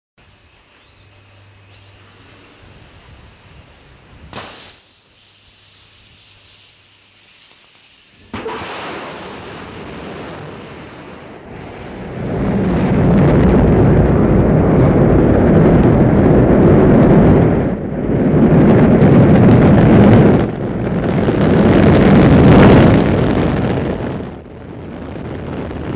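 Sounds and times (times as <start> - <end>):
rocket engines igniting: 0.3 - 25.9
deep rocket rumbling: 8.2 - 25.9.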